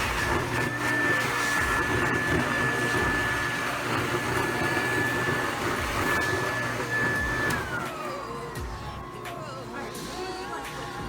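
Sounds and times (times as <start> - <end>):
stuffing machine blower rushing: 0.0 - 10.3.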